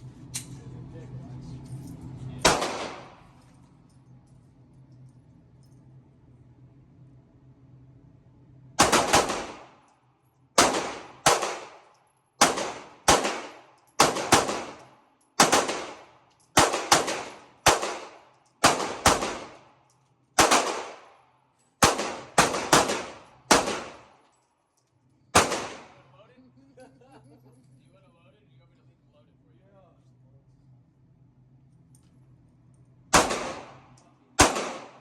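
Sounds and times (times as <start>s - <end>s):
pistol shots with echo: 2.4s - 3.2s, 8.8s - 9.8s, 10.6s - 19.6s, 20.4s - 21.2s, 21.8s - 24.2s, 25.3s - 26.1s, 33.1s - 35.0s.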